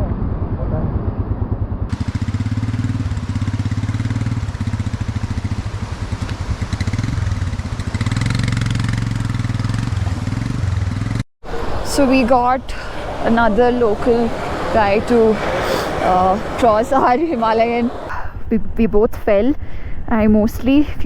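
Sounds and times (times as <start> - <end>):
motorcycle engine running: 1.3 - 11.2.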